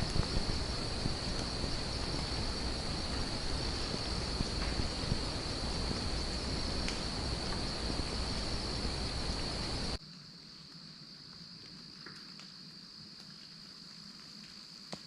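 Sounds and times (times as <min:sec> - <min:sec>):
low rumbling noise: 0:00.0 - 0:10.0
crickets chirping: 0:00.0 - 0:15.0.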